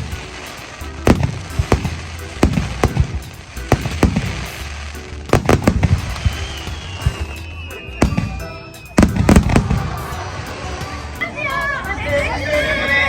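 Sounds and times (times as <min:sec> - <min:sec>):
firework booms with crackling: 0:00.0 - 0:11.2
falling firework whistle: 0:05.5 - 0:13.0.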